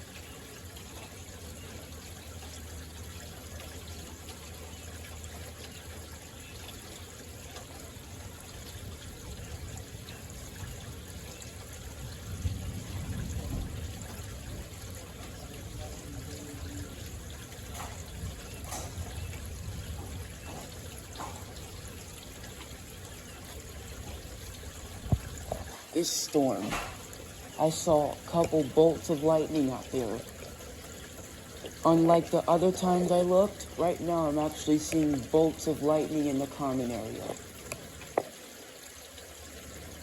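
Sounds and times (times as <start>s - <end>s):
heavy rain: 8.6s - 38.0s
low rumble of thunder: 8.8s - 22.4s.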